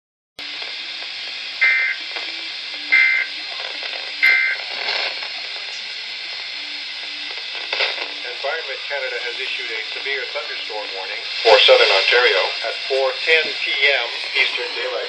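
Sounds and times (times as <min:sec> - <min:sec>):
radio static hiss: 0:00.4 - 0:15.0
two-tone digital chirps: 0:01.6 - 0:02.0, 0:02.9 - 0:03.3, 0:04.2 - 0:04.6.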